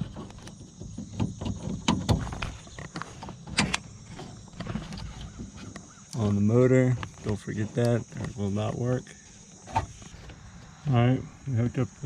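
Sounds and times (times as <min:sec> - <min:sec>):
hands clicking and knocking in car door: 0:00.0 - 0:03.8.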